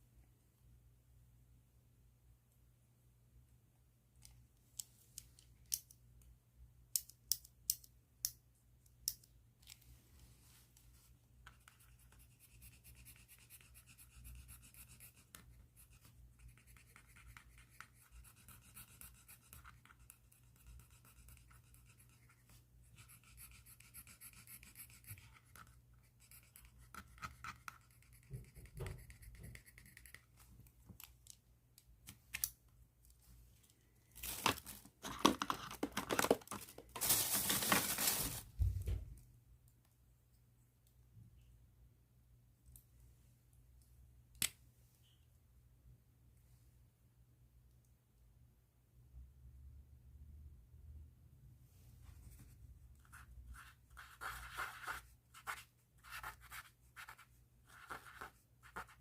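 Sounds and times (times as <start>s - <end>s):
pen scratching on paper: 11.6s - 22.3s, 22.9s - 30.2s, 53.1s - 59.0s.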